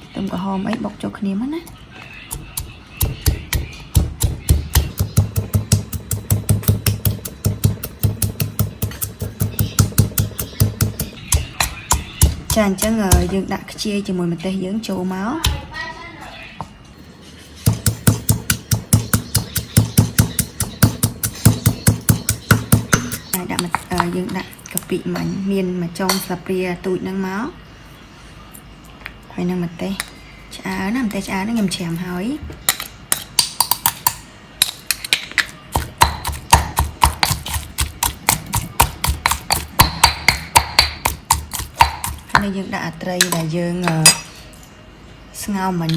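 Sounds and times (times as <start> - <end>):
pestle pounding in a mortar: 2.3 - 13.4, 17.6 - 24.4, 32.7 - 42.6.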